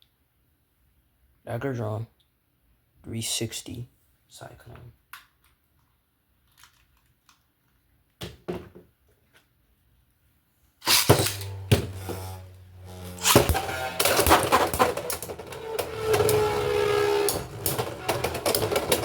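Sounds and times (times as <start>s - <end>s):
spinning tops clashing: 10.8s - 15.2s
spinning tops humming: 10.8s - 19.0s.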